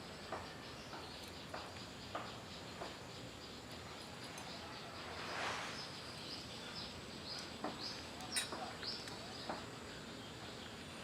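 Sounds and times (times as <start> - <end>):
bird chirping: 0.0 - 11.0.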